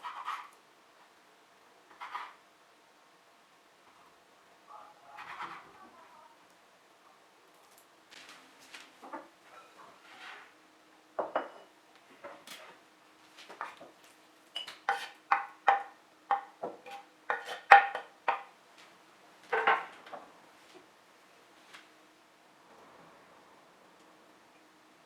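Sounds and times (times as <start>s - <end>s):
dishes and cutlery clinking: 9.1s - 10.0s, 11.2s - 12.4s, 14.5s - 18.5s.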